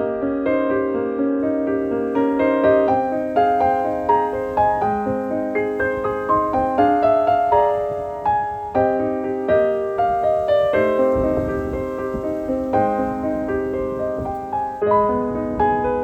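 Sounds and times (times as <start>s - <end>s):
gentle piano melody: 0.0s - 16.0s.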